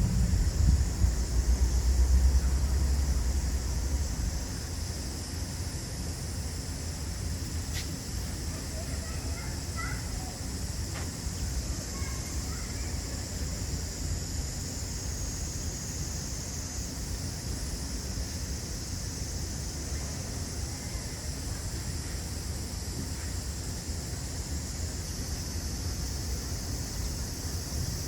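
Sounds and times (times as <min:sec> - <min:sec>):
low rumble: 0:00.0 - 0:04.2
steady high hiss: 0:00.0 - 0:28.0.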